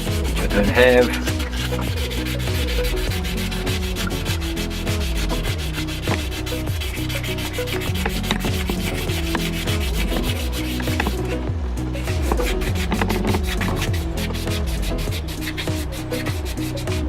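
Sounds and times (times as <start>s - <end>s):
sandpaper scratching on metal: 0.0s - 11.4s, 12.0s - 17.0s.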